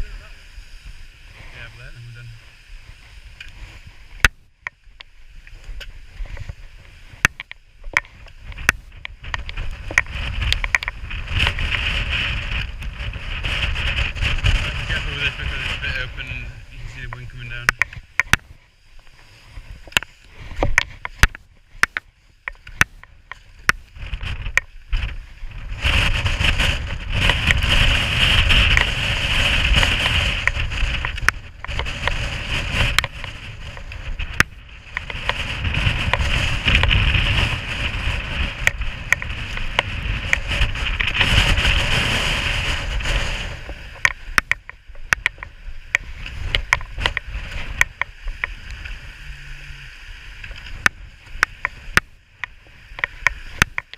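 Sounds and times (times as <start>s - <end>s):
wind buffeting microphone: 0.0s - 53.9s
sharp clicks and knocks: 7.1s - 11.9s, 17.1s - 18.5s, 19.8s - 25.1s, 32.8s - 35.4s, 43.9s - 48.6s, 50.4s - 53.9s.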